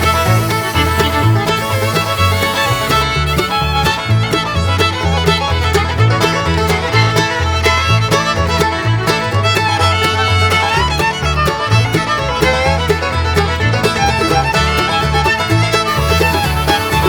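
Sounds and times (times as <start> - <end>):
bouncing bass line: 0.0 - 17.0
fiddle: 0.0 - 17.0.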